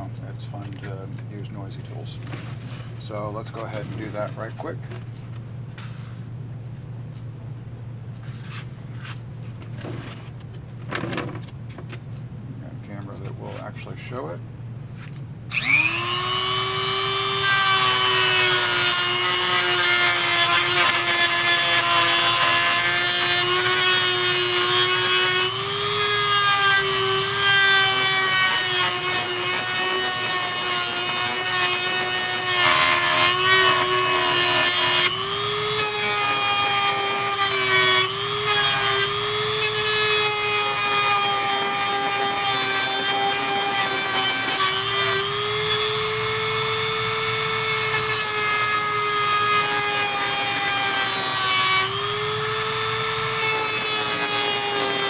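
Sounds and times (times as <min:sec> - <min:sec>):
rotary tool grinding metal: 0:15.5 - 0:55.0.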